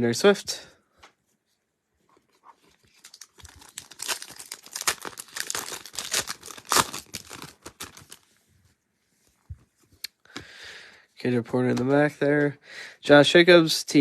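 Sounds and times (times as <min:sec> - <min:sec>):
card pack wrapper tearing: 0:02.7 - 0:08.2.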